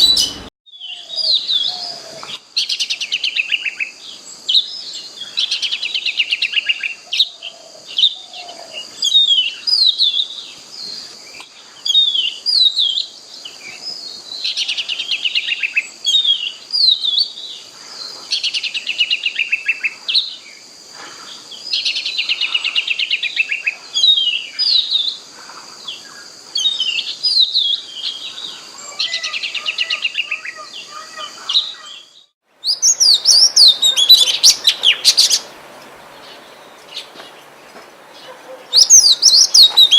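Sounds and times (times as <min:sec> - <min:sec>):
bird singing whistles and trills: 0:00.0 - 0:03.9, 0:26.6 - 0:35.4, 0:38.7 - 0:39.9
high-pitched background hiss: 0:00.0 - 0:39.9.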